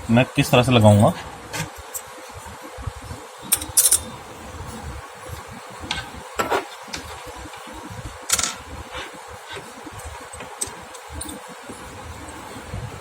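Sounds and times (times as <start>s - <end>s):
steady background hum: 0.0s - 13.0s
metal parts clattering: 3.5s - 4.1s, 10.6s - 11.4s
metal parts clicking and knocking: 3.5s - 4.1s, 8.3s - 8.6s, 10.4s - 11.4s.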